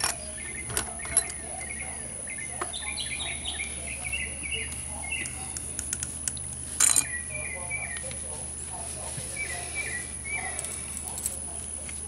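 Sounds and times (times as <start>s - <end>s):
small bird chirping: 0.0s - 5.8s, 9.3s - 11.0s.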